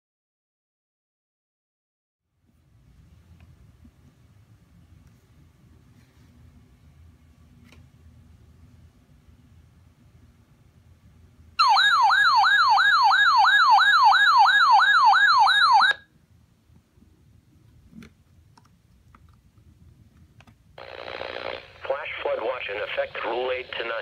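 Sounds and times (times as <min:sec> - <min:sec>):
electronic siren alert tone: 0:11.6 - 0:16.0.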